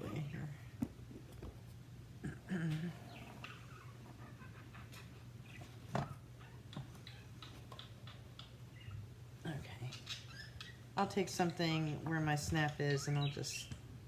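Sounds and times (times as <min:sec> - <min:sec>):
pet bird chirping: 0:06.4 - 0:09.0, 0:09.8 - 0:10.9, 0:12.8 - 0:13.8.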